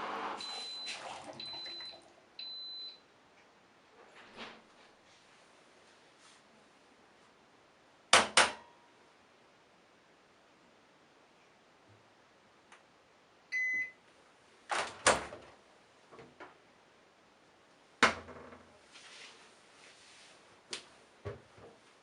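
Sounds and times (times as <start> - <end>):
washing machine beep: 0.0 - 3.1, 13.5 - 14.0.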